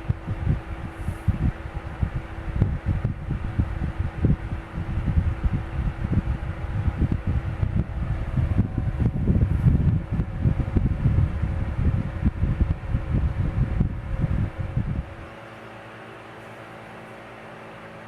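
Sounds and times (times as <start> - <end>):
air rumbling on microphone: 0.0 - 16.8
fan motor hum: 0.0 - 18.0.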